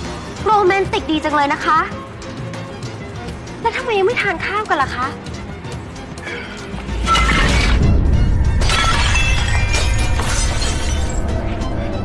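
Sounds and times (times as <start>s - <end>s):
dramatic music: 0.0s - 12.0s
glass and tableware shattering: 8.6s - 11.2s.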